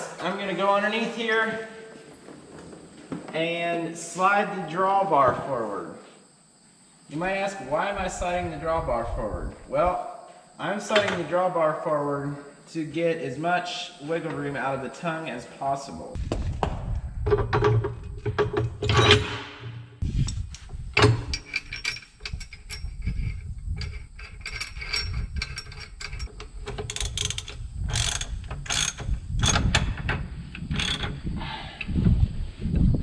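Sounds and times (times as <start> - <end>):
metal clanks and scrapes: 17.3 - 31.2.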